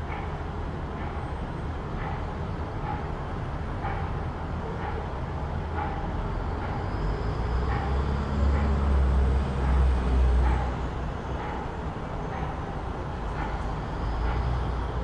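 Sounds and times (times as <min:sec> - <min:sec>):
background traffic: 0:00.0 - 0:15.0
vehicle engine rumble passing: 0:05.3 - 0:15.0.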